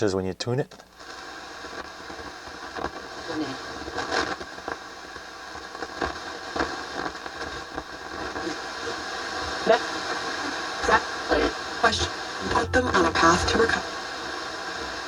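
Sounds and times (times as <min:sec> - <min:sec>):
fragments of broadcast audio: 0:00.0 - 0:15.0
radio crackles: 0:00.0 - 0:15.0
radio static hiss: 0:00.0 - 0:15.0.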